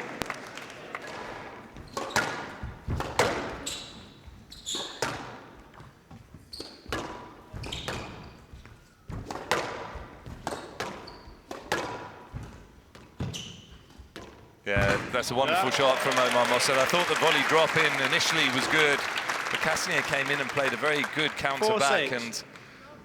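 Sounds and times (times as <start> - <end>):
squash ball hits: 1.1 - 4.1, 6.7 - 8.5, 9.1 - 15.2
shoes squeaking on court: 1.8 - 14.6.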